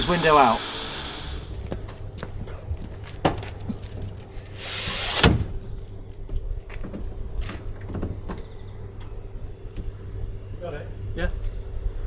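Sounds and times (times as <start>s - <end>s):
steady low hum: 0.0s - 6.6s.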